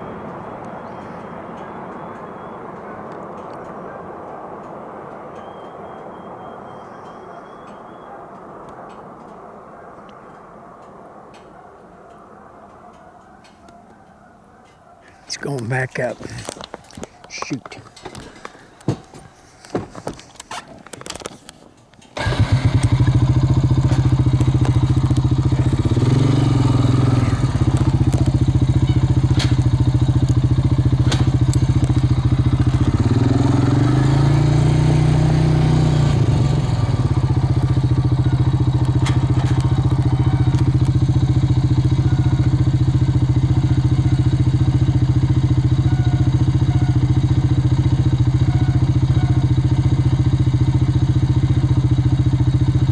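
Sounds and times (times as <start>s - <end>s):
vehicle engine starting and revving: 22.1s - 52.9s.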